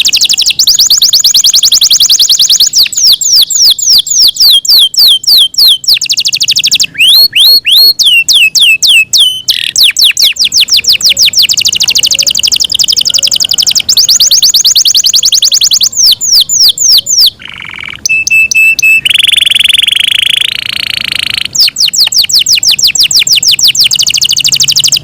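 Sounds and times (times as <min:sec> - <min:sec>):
canary singing trills: 0:00.0 - 0:25.0.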